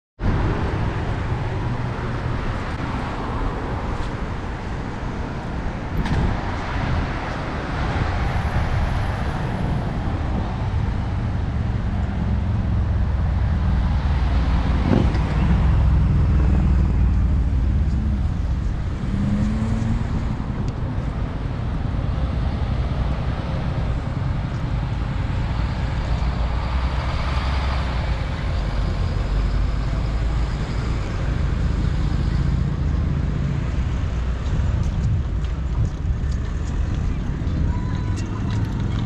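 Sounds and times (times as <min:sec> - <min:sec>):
cars passing: 0:00.2 - 0:39.0
engine revving: 0:10.6 - 0:20.6.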